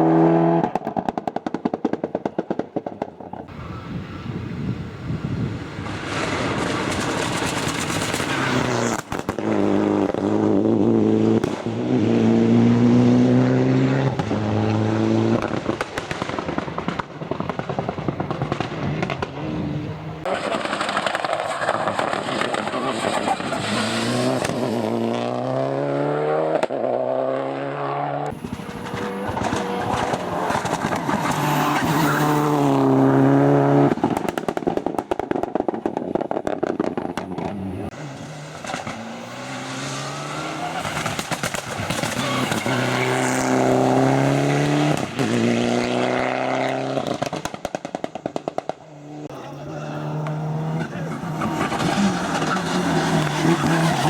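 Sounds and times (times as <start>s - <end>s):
exhaust crackles and pops: 0.6s - 3.6s, 5.7s - 10.6s, 14.1s - 24.8s, 28.2s - 33.0s, 33.8s - 39.4s, 40.7s - 44.0s, 46.6s - 48.9s, 50.2s - 54.0s
car engine revving: 5.9s - 15.7s, 18.5s - 34.4s, 36.9s - 47.9s, 48.5s - 54.0s.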